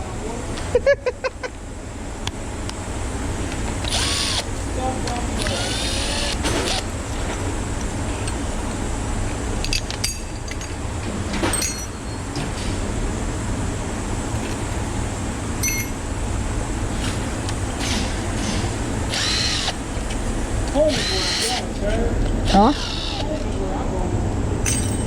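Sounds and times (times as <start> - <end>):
metallic clinks of tools: 11.5 - 12.3, 15.6 - 16.0, 24.6 - 25.0.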